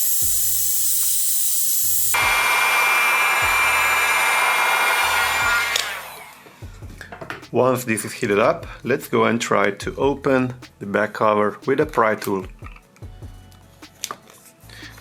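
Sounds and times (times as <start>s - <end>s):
heat gun blowing hot air: 0.0s - 6.6s.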